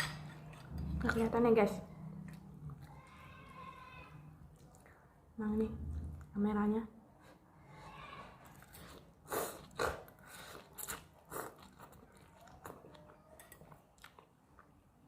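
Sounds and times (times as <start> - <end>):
person eating noodle soup: 8.4 - 14.9.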